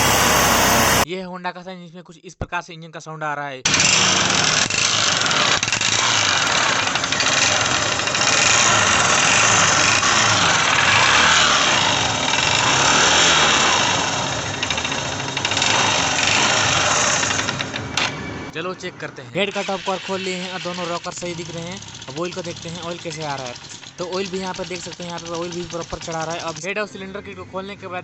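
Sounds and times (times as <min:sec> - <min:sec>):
motorcycle engine knocking rattle: 0:03.7 - 0:18.1, 0:20.2 - 0:26.7.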